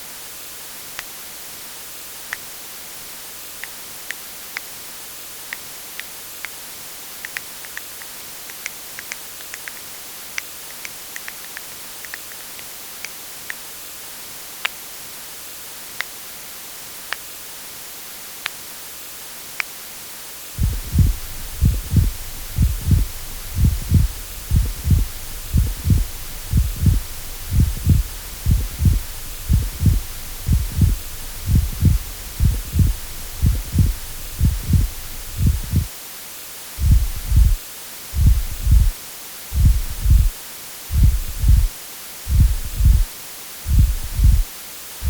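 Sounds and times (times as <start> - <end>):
steady hiss: 0.0 - 45.0
heartbeat thumps: 20.6 - 35.9, 36.8 - 40.3, 40.9 - 41.7, 42.3 - 43.1, 43.7 - 44.5.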